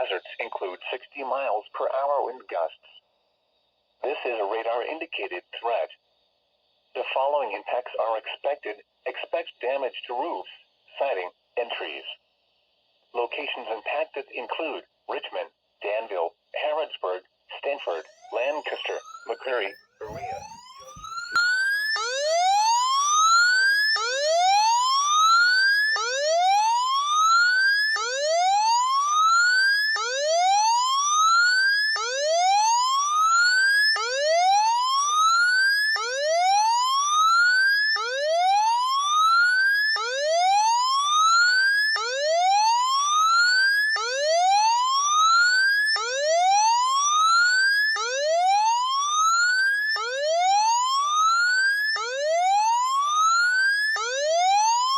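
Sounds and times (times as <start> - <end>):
whooping siren: 17.9 - 54.9.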